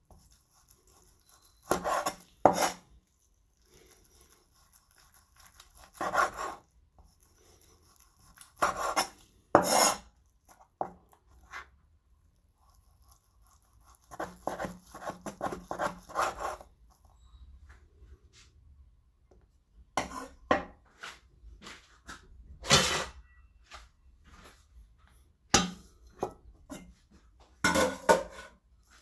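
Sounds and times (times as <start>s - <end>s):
knife slicing on chopping board: 1.7s - 2.8s, 8.6s - 10.0s.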